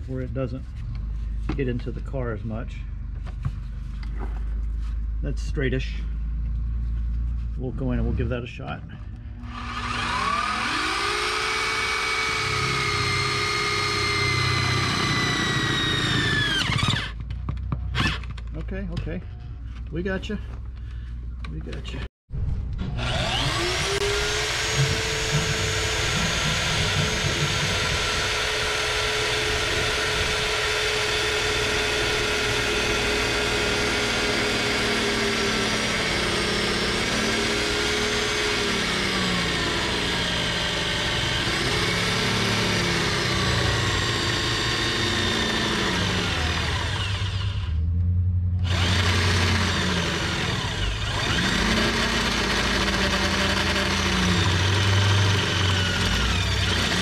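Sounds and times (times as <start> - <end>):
power drill running under load: 9.4 - 17.2, 18.0 - 18.3, 23.0 - 47.8, 48.6 - 57.0.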